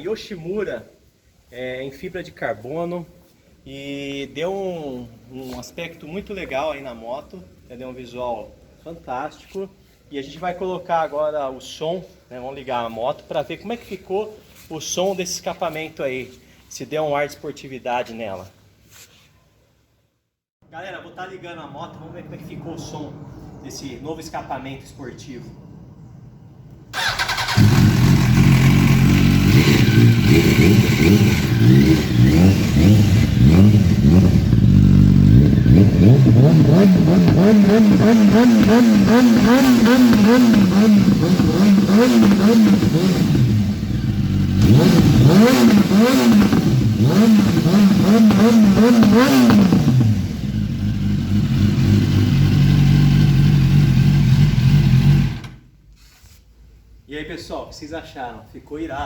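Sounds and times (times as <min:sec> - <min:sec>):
motorcycle engine revving: 0:27.0 - 0:55.6.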